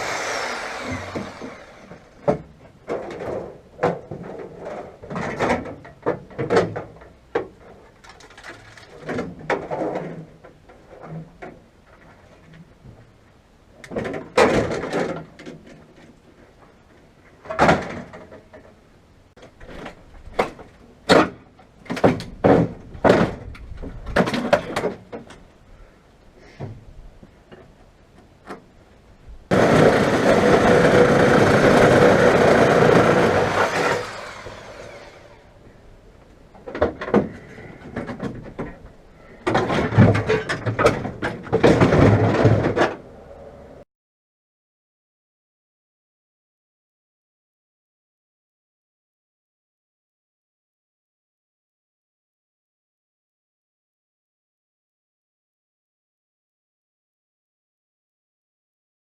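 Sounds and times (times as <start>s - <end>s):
reciprocating saw cutting sheet metal: 0.0s - 2.2s, 29.5s - 35.5s
metal knocks and bangs: 39.4s - 43.0s.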